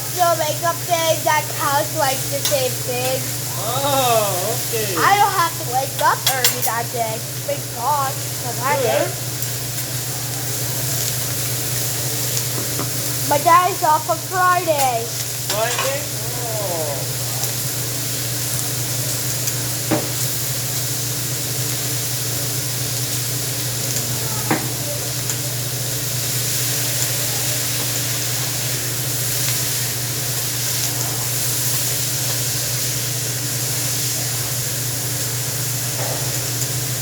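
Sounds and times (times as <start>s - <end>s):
food sizzling on a griddle: 0.0s - 37.0s.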